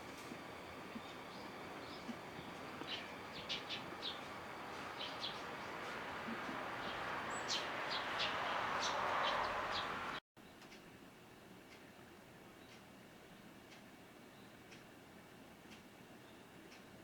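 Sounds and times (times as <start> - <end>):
background rush: 0.0 - 10.2
small birds chirping: 0.0 - 10.6.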